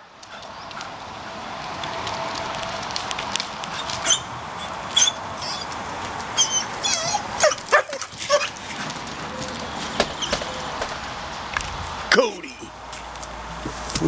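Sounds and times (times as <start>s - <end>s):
dog barking and whining: 4.0s - 5.7s, 6.4s - 8.8s.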